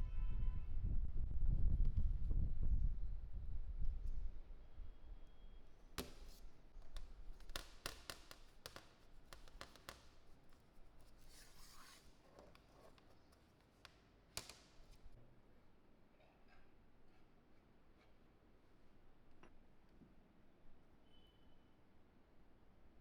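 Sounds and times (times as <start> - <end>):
short scraping rub: 10.4 - 13.9.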